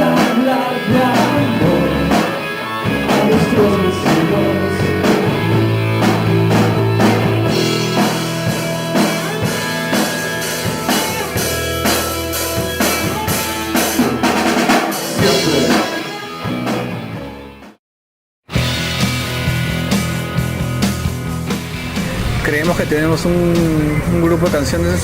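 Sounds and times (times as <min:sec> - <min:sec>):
instrumental rock music: 0:00.0 - 0:17.8, 0:18.5 - 0:25.0.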